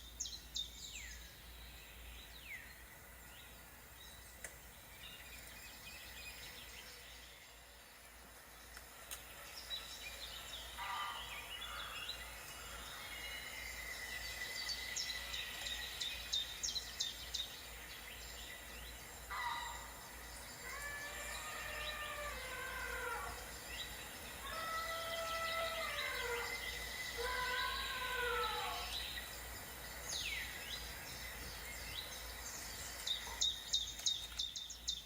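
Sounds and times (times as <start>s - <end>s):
wild birds calling: 0.0s - 35.0s.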